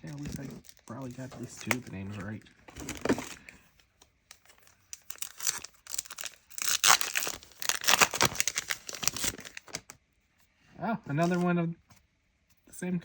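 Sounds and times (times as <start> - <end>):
foil wrapper crinkling and tearing: 0.0 - 3.5, 4.3 - 10.0.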